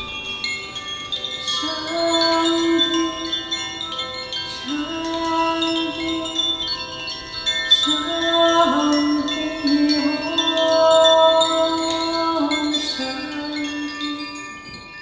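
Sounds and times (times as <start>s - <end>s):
chimes ringing: 0.0s - 15.0s
woman singing long notes: 1.6s - 3.9s, 4.6s - 6.8s, 7.8s - 14.8s.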